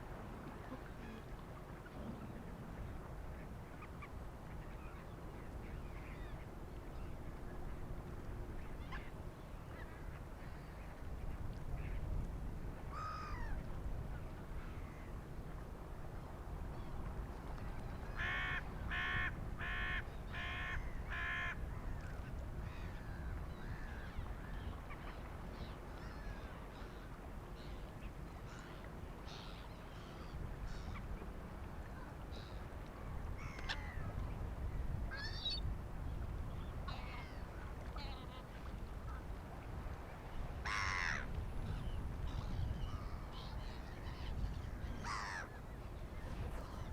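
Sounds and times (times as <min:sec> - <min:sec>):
crow cawing: 0:40.6 - 0:41.2, 0:45.0 - 0:45.5
gulls calling: 0:40.6 - 0:45.6.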